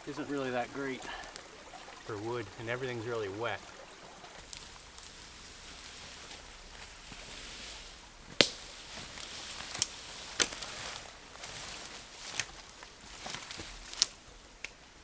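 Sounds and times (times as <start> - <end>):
river water rushing: 0.0 - 13.2
sharp cracks: 8.3 - 8.8.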